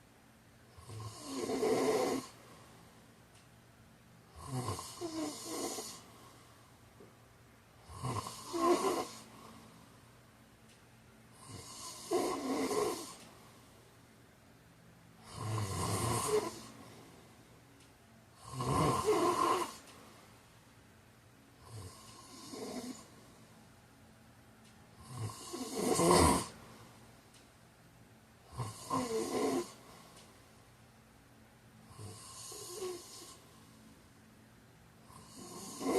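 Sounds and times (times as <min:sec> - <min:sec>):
person snoring: 0:00.7 - 0:02.4, 0:04.3 - 0:06.1, 0:07.8 - 0:09.5, 0:11.3 - 0:13.2, 0:15.2 - 0:17.0, 0:18.4 - 0:19.8, 0:21.6 - 0:23.2, 0:25.0 - 0:26.6, 0:28.5 - 0:30.1, 0:31.9 - 0:33.5, 0:35.0 - 0:35.9.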